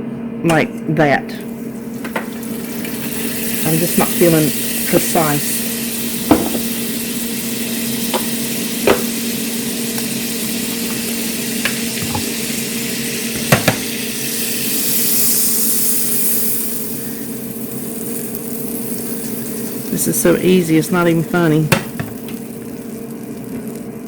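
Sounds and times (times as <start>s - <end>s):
steady low hum: 0.0s - 24.0s
butter sizzling in frying pan: 1.5s - 24.0s
utensil tapping pan: 13.4s - 13.9s.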